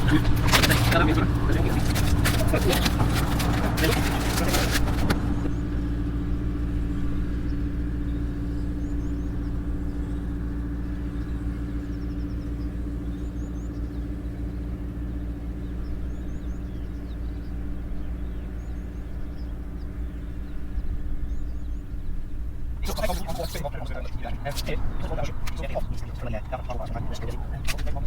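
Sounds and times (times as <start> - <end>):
low mechanical hum: 0.0 - 28.0.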